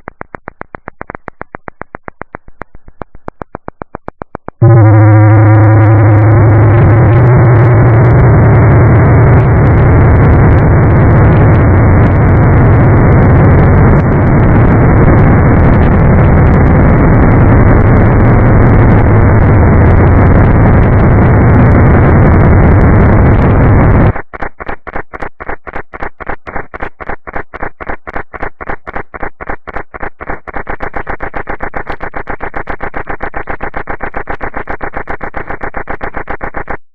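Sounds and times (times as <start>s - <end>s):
distorted digital noise: 0.0s - 36.8s
stuttering loop of fragments: 0.1s - 36.8s
deep hum: 4.5s - 24.2s.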